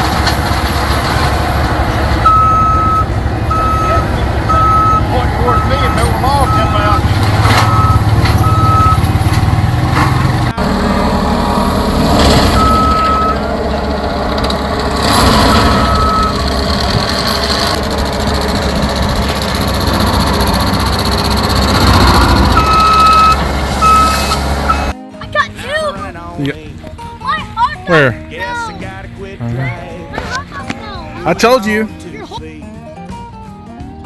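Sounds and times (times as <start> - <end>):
skid steer engine running: 0.0 - 25.0, 26.1 - 32.6
backup alarm beeping: 2.2 - 9.2, 10.6 - 25.0.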